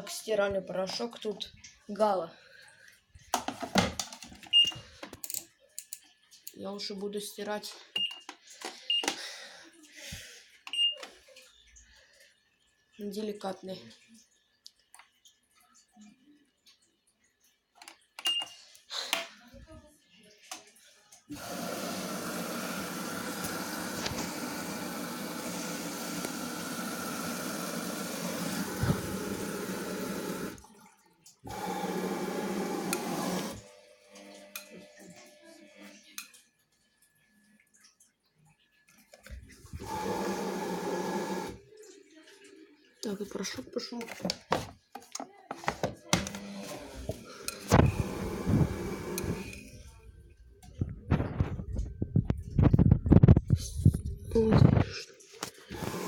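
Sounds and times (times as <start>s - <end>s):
washing machine running: 21.3s - 30.8s, 31.4s - 35.8s, 39.5s - 41.8s, 46.1s - 49.8s, 55.7s - 56.0s.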